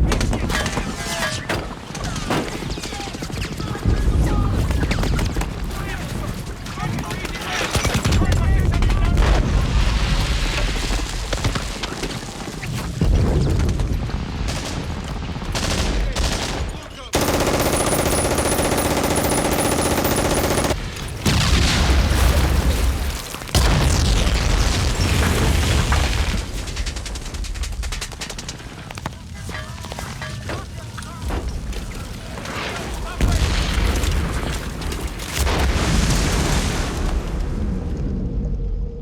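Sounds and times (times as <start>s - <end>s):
rifle and machine-gun fire: 0.0s - 28.7s
heavy explosions: 7.7s - 12.2s, 13.0s - 27.6s.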